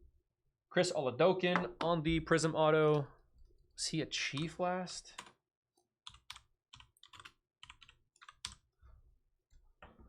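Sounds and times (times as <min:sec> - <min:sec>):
typing on keyboard: 0:06.0 - 0:08.7.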